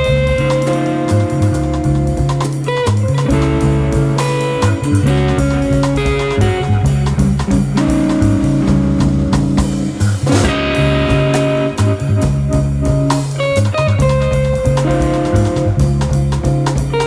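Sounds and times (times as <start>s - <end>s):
electric guitar lines: 0.0s - 17.0s
walking electric bass: 0.0s - 17.0s
drum kit: 5.8s - 17.0s
cymbal wash: 9.4s - 11.8s.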